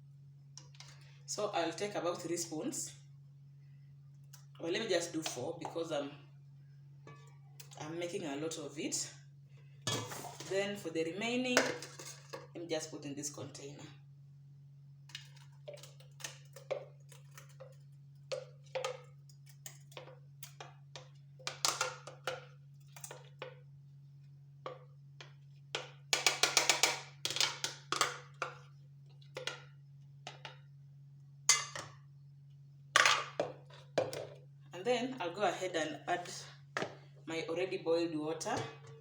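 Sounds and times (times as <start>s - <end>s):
spoon scraping and tapping bowl: 15.1s - 23.6s.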